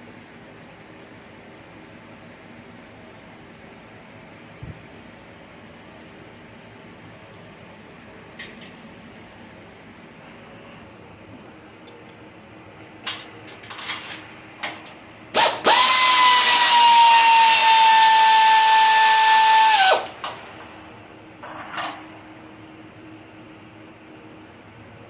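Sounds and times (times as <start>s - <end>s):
power tool whining: 15.4s - 20.2s.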